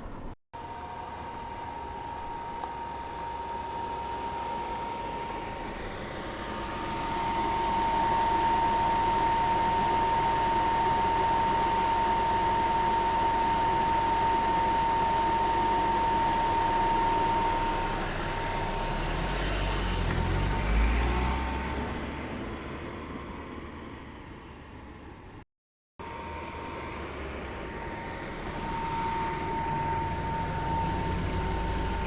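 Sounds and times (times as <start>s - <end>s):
thin steady whine: 0.0s - 19.1s, 26.0s - 32.0s
car engine running: 0.6s - 25.0s, 26.0s - 32.0s.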